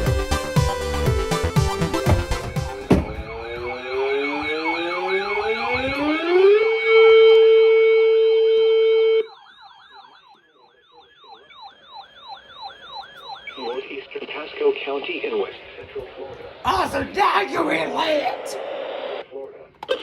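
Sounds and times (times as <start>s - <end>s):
siren climbing to steady tone: 0.0s - 14.8s
faint wailing siren: 0.0s - 16.7s.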